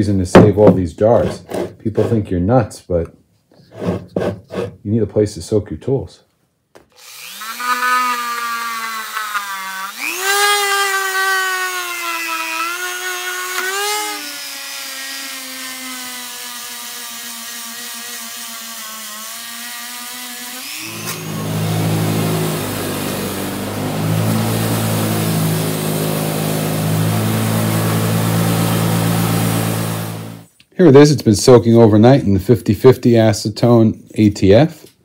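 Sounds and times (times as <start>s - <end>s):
power tool motor whining: 7.0s - 30.5s
rough mechanical buzz: 20.6s - 30.5s.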